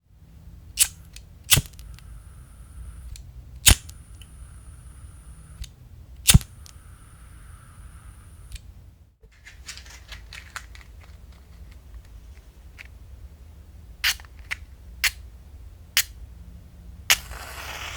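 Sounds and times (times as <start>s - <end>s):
gas lighter clicking: 0.8s - 2.1s, 3.0s - 4.3s, 5.5s - 6.8s
hissing gas flame with whistle: 0.8s - 8.6s, 17.1s - 17.9s.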